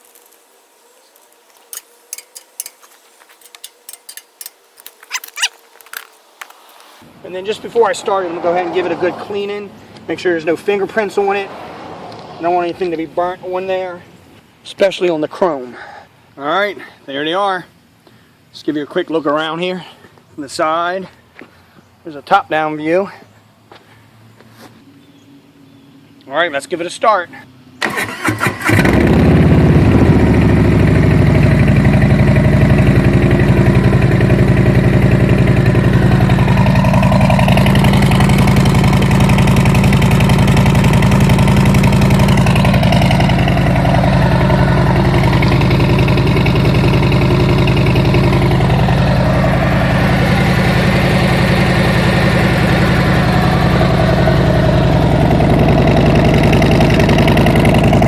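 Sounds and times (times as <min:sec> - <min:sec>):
motorcycle engine idling: 0:01.7 - 0:06.8, 0:29.2 - 0:58.0.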